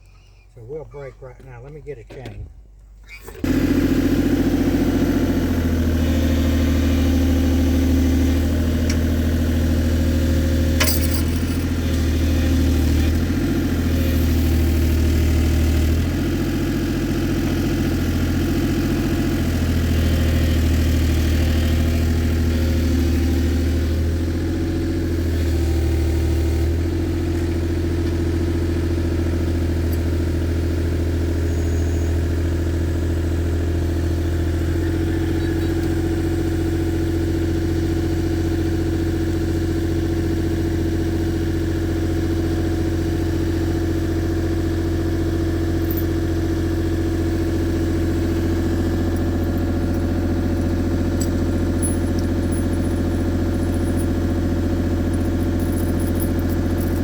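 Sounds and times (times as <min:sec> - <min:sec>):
engine idling: 0:00.0 - 0:57.0.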